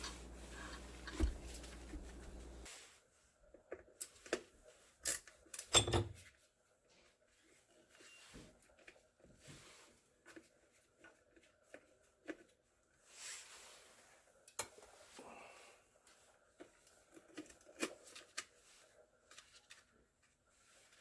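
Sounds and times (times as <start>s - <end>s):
soft hiss: 0.0s - 3.0s.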